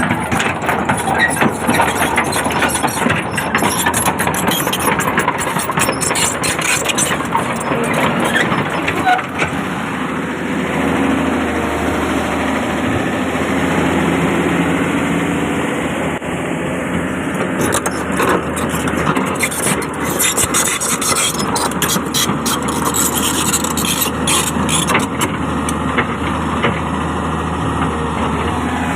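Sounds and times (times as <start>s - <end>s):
sharp knocks and clatter: 0.0s - 9.6s, 17.4s - 26.9s
excavator diesel engine running: 0.0s - 28.9s.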